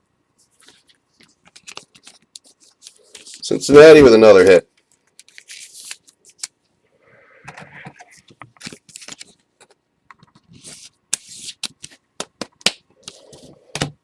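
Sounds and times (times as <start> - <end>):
packaging rustling: 0.6 - 3.5, 4.8 - 6.5, 8.0 - 12.0.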